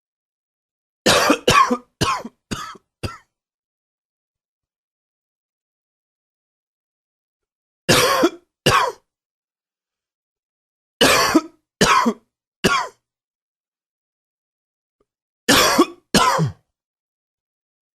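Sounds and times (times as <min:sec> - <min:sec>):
man coughing: 0:01.1 - 0:03.2, 0:07.9 - 0:09.0, 0:11.0 - 0:13.0, 0:15.5 - 0:16.6.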